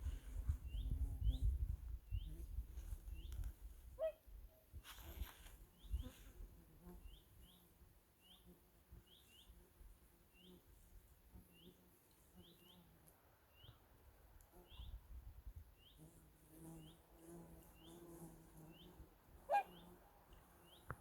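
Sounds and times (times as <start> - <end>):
faint bird chirps: 12.4 - 13.9, 14.6 - 15.0.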